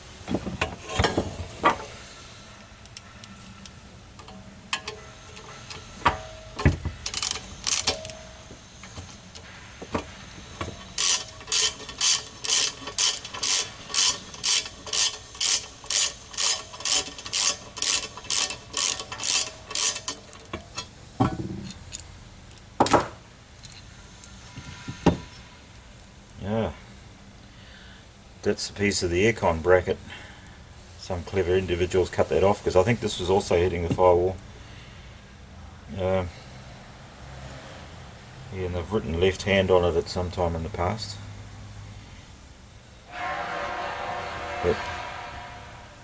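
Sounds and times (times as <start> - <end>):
ratchet wrench ratcheting: 4.2 - 20.9.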